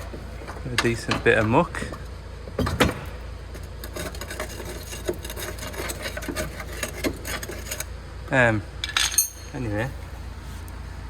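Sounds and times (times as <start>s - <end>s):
tools clicking and scraping: 3.5s - 7.9s, 8.8s - 9.6s.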